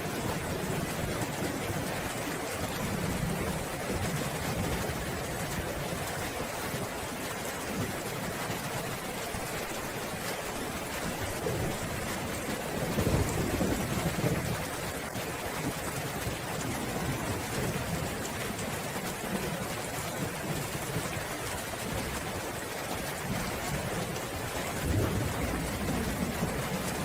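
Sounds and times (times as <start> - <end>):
heavy rain falling: 0.0 - 27.0
low rumble of thunder: 11.2 - 14.9, 23.2 - 27.0.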